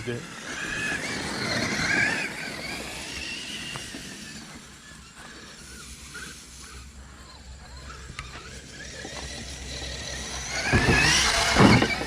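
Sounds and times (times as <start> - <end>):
electric motor whining: 0.0 - 12.0
thump: 10.7 - 12.0.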